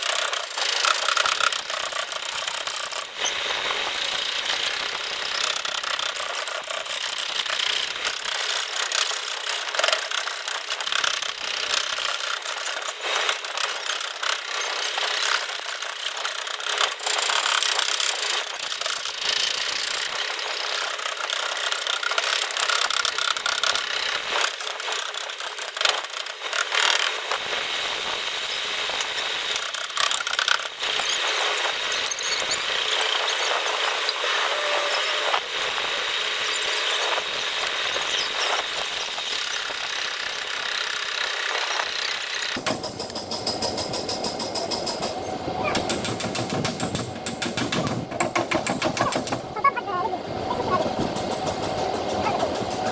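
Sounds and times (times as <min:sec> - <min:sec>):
tools scraping metal panel: 0:42.6 - 0:49.6.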